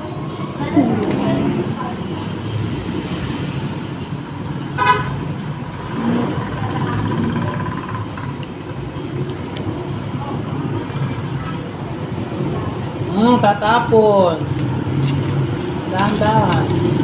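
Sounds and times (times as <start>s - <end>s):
road traffic rumble: 0.0s - 17.0s
vehicle horn toot: 4.8s - 5.1s.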